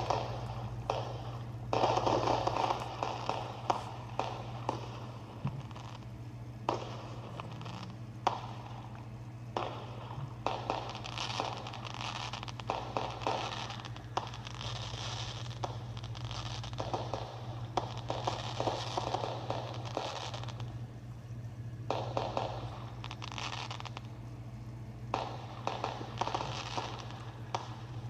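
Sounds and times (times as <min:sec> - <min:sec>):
firework crackling: 0:00.0 - 0:28.0
firework popping: 0:00.0 - 0:28.0.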